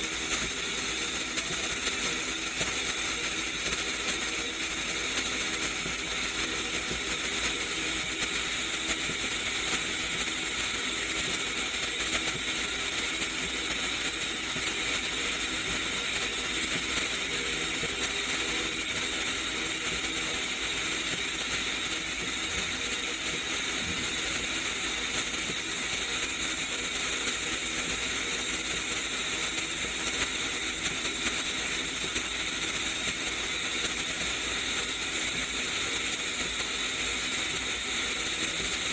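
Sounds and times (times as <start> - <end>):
welding arc hissing: 18.4 - 30.9.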